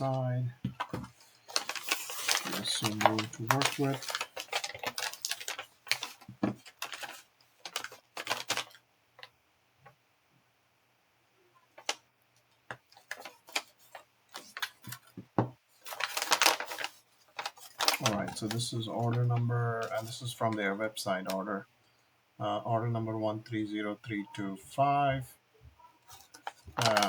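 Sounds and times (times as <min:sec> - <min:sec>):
rustling: 0:00.8 - 0:09.3, 0:12.8 - 0:20.1, 0:26.0 - 0:27.0.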